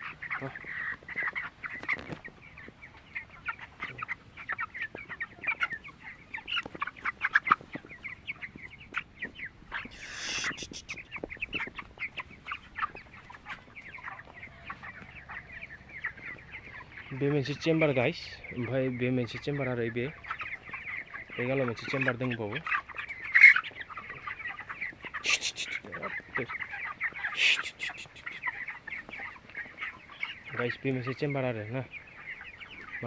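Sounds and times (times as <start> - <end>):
rustling: 0.0 - 15.0
chickens peeping: 0.0 - 33.0.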